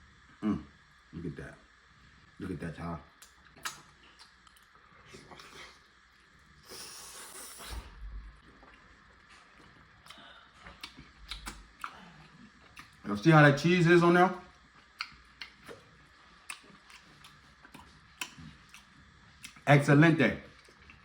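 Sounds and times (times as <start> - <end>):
person chewing food: 3.4 - 5.8, 8.4 - 13.1, 14.6 - 19.6, 20.5 - 21.0.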